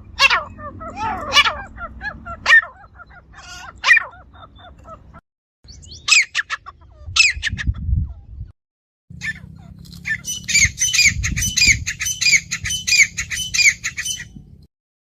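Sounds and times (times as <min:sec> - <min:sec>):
bird soft chirps: 0:05.7 - 0:06.2
bird shrill calls: 0:05.7 - 0:06.6, 0:09.2 - 0:14.4.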